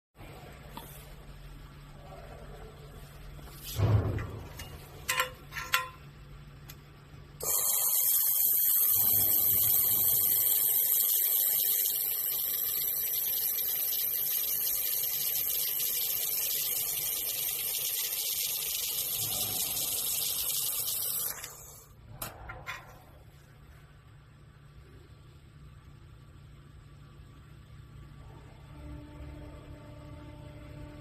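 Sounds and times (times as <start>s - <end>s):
thump: 3.7s - 4.6s
laser machine hissing: 7.4s - 21.9s.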